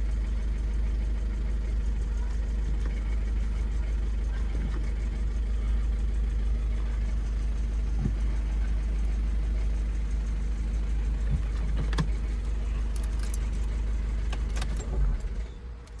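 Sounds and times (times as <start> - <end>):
car engine idling: 0.0 - 16.0
light clicks and rattles: 2.0 - 5.6, 7.8 - 15.0.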